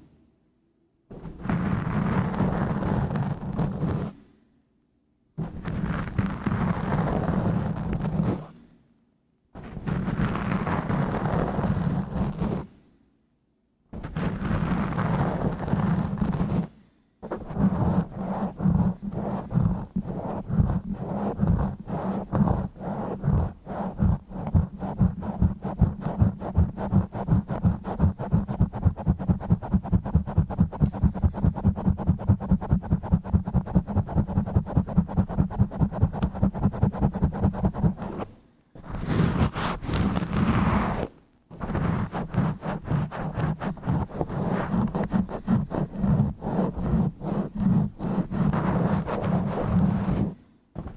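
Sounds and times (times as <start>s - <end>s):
microphone being scratched: 5.4s - 8.5s, 14.0s - 50.9s.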